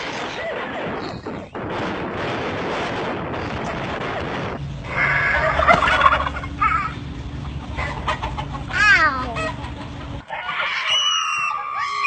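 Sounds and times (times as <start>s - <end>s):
steady low hum: 0.0s - 10.3s
chickens clucking: 3.6s - 11.9s
rooster calling: 4.8s - 12.0s.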